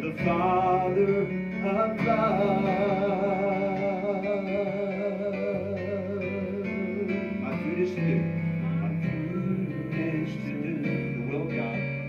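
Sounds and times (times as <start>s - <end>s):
instrumental accompaniment: 0.0s - 12.0s
person singing long note: 2.0s - 7.2s.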